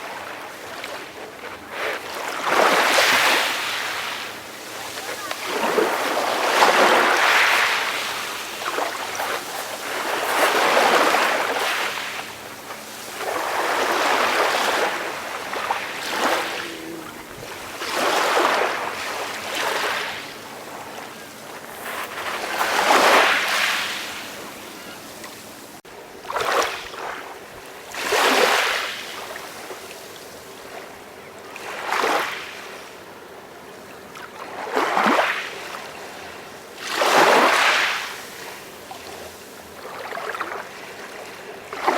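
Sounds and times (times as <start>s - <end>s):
sea waves washing in: 0.6s - 25.8s.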